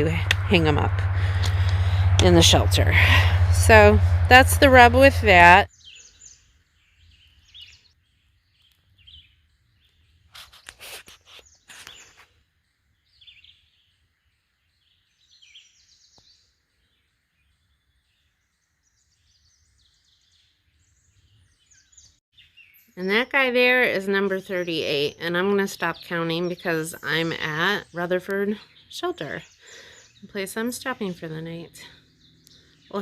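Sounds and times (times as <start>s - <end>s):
birds singing: 5.7s - 33.0s
brief scratchy noises: 10.3s - 12.3s.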